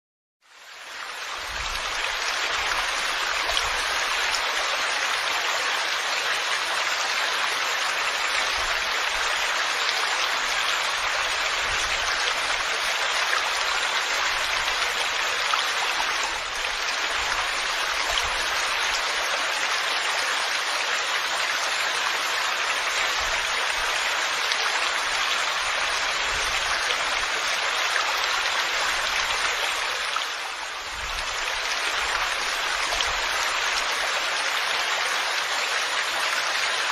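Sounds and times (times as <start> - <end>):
heavy rain falling: 0.7 - 36.9.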